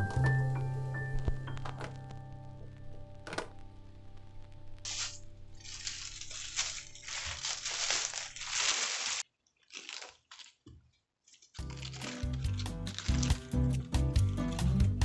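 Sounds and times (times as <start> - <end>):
soft background music: 0.0 - 7.7
packaging rustling and crunching: 4.9 - 15.0.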